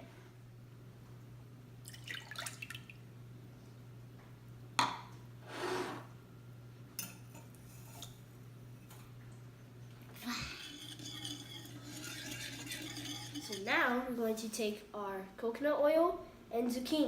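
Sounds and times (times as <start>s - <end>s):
milk pouring: 1.8s - 3.0s.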